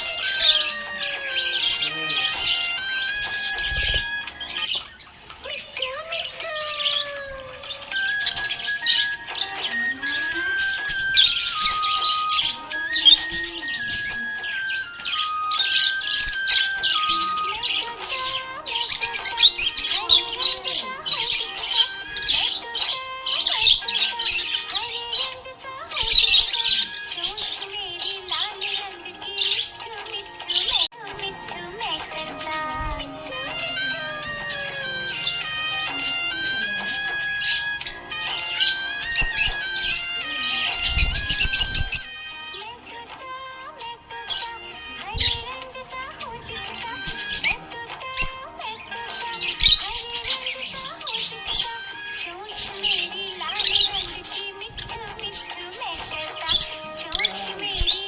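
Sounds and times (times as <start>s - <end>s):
budgerigars chirping: 0.0s - 30.9s, 31.8s - 42.5s, 44.2s - 58.0s
background music: 0.0s - 58.0s.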